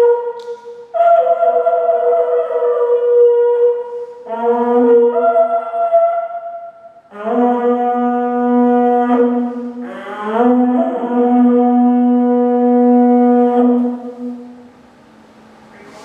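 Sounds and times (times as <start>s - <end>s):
held horn-like wind notes: 7.1s - 14.6s.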